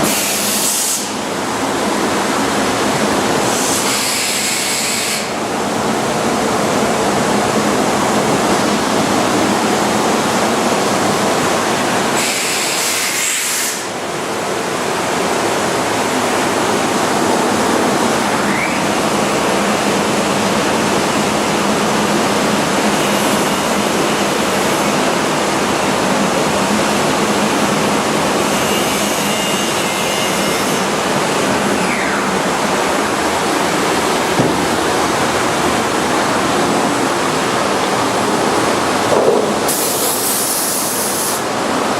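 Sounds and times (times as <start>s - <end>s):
wood router rushing noise: 28.4s - 41.6s
high hiss: 39.6s - 41.5s.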